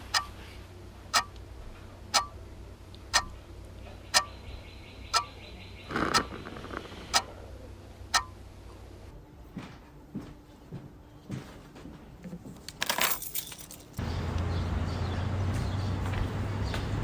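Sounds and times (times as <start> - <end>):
clock ticking: 0.0 - 0.4, 1.1 - 1.4, 2.1 - 2.4, 3.1 - 3.4, 4.1 - 4.4, 5.1 - 5.3, 7.1 - 7.3, 8.1 - 8.4
steady hum: 0.0 - 11.3
clattering jangle: 12.7 - 14.0.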